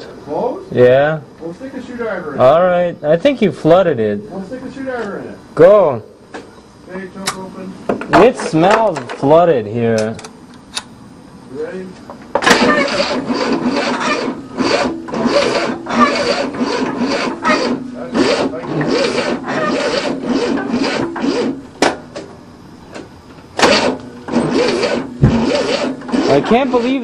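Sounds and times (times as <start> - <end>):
engine cranking by starter: 12.4 - 22.3, 23.6 - 27.0.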